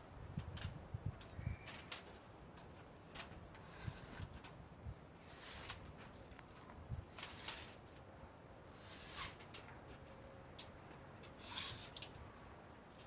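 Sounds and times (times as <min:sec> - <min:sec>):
short scraping noises: 0:05.2 - 0:06.2, 0:07.1 - 0:07.8, 0:08.7 - 0:09.5, 0:11.4 - 0:12.0.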